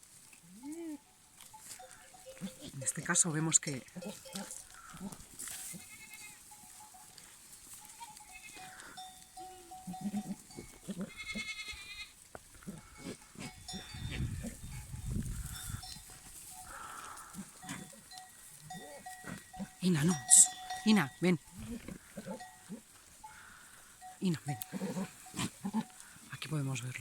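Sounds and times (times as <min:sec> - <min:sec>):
goat bells ringing: 0:01.0 - 0:12.0, 0:12.6 - 0:27.0
goats grunting: 0:03.8 - 0:06.0, 0:09.9 - 0:11.6, 0:12.5 - 0:14.8, 0:16.6 - 0:26.4
goats bleating: 0:03.8 - 0:06.5, 0:07.8 - 0:14.6, 0:16.6 - 0:26.3.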